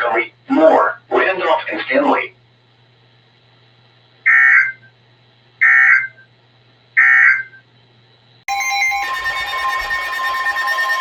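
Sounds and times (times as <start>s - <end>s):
steady electronic alarm tone: 8.5s - 11.0s.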